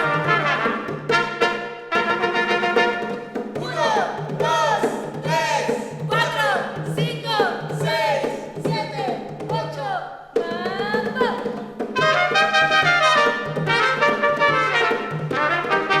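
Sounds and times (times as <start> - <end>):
brass band playing: 0.0 - 3.6, 12.0 - 16.0.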